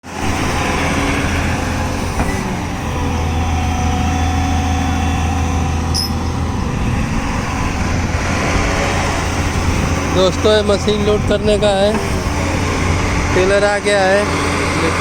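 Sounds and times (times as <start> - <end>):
diesel engine humming: 0.0 - 15.0
brief high squeak: 5.9 - 6.2.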